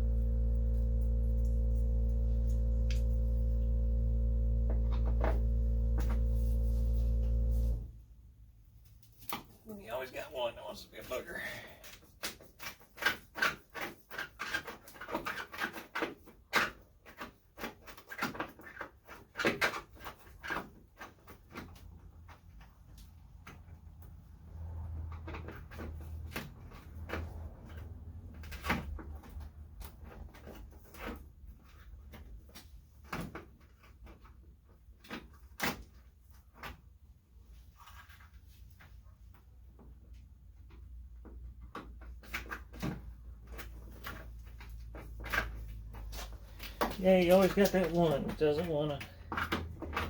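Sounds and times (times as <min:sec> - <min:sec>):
low hum: 0:00.0 - 0:07.9
clicks and knocks of hand work: 0:11.8 - 0:24.2, 0:40.6 - 0:50.0.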